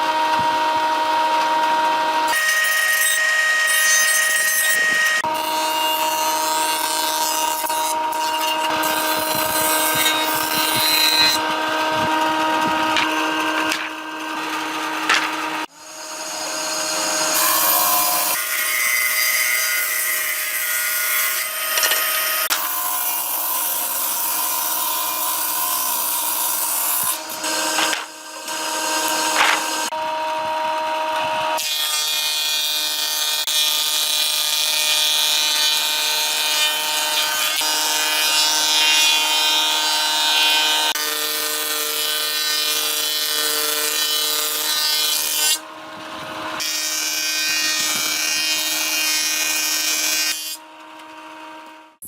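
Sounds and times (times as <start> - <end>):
wood cutting or sanding rasp: 2.3 - 30.0
power tool motor whine: 8.7 - 17.4.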